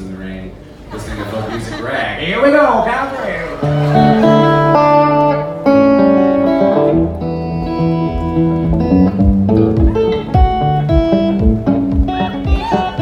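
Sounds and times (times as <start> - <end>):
solo guitar playing: 3.6 - 13.0
low thumps keeping the beat: 7.0 - 13.0.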